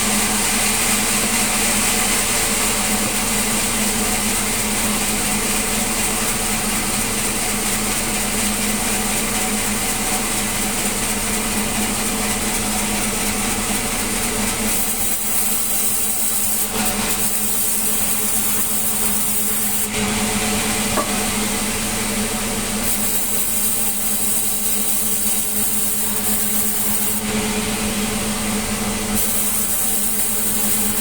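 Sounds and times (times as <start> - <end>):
broad machinery hiss: 14.7 - 27.3, 29.1 - 31.0.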